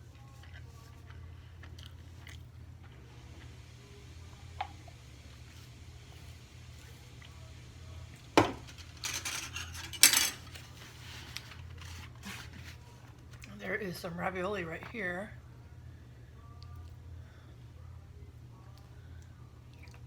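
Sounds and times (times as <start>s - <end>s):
cutlery scraping on a plate: 8.6s - 10.8s.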